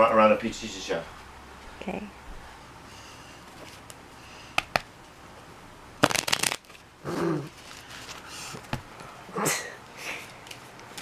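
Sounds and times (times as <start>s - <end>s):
playing cards shuffling: 6.0s - 6.8s.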